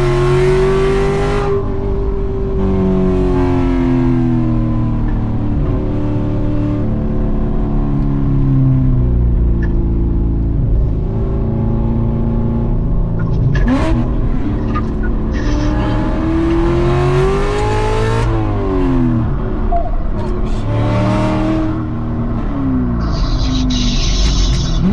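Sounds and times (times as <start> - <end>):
car engine revving hard: 0.0 - 1.9, 10.8 - 24.9.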